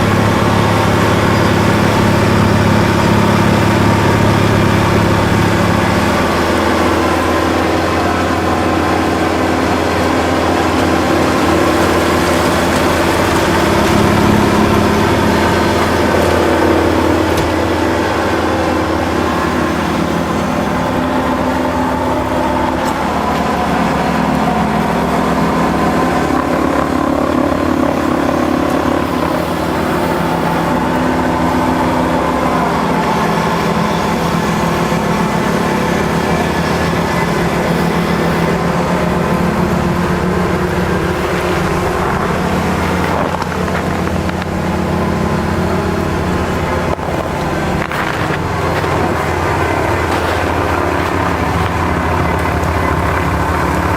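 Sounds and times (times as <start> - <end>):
tractor diesel engine running: 0.0 - 53.9.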